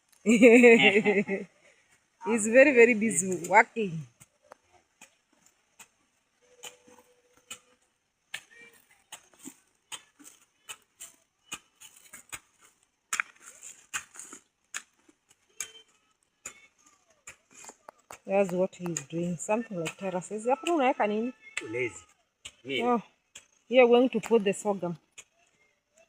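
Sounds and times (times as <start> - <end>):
hand hoe chopping soil: 5.8 - 21.8, 22.4 - 25.3.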